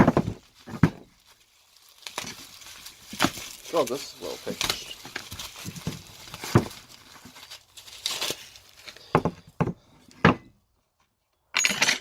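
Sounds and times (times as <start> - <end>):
packing material tearing and crinkling: 0.0 - 9.1.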